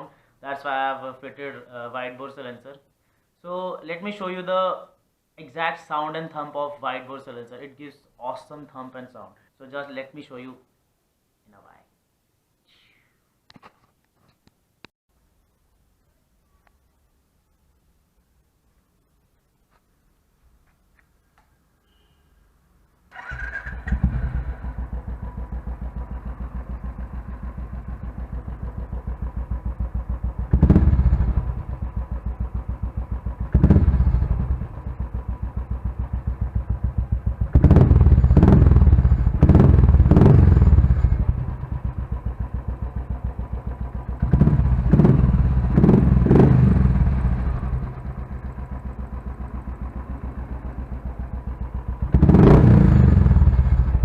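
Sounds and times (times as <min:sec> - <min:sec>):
motorcycle engine idling and revving: 0:23.1 - 0:54.0.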